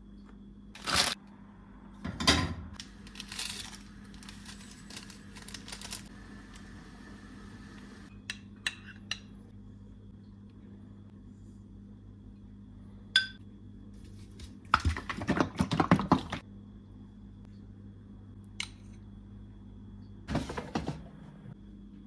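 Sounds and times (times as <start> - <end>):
utensils clattering and scraping: 0.8 - 1.2, 2.1 - 6.8.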